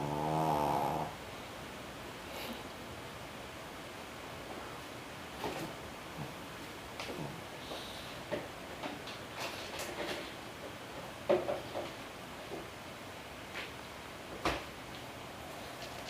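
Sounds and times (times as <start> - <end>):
dog snoring: 0.0 - 1.2.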